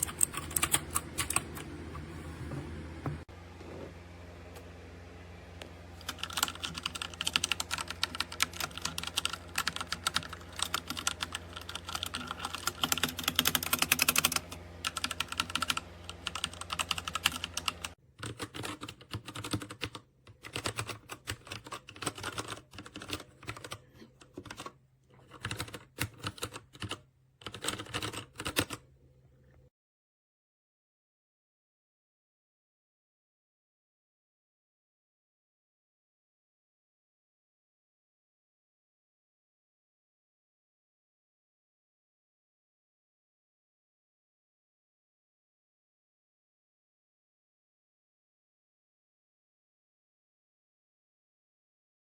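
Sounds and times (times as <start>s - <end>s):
mechanical keyboard typing: 0.0s - 1.8s, 6.0s - 28.9s
background hum: 0.0s - 29.7s.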